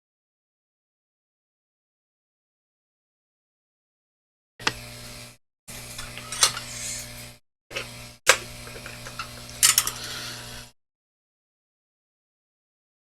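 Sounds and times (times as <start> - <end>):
low electrical hum: 4.6 - 10.7.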